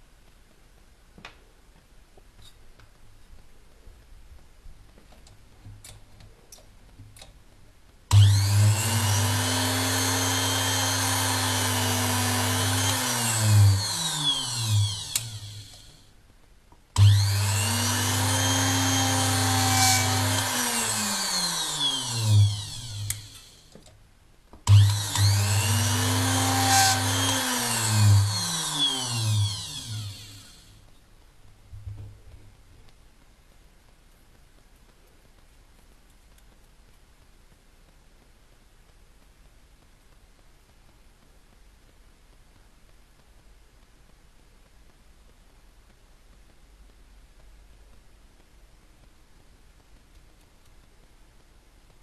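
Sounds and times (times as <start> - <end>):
small drill motor humming and whining: 8.1 - 16.1, 17.0 - 23.7, 24.7 - 30.8
faint clicks: 32.4 - 52.0.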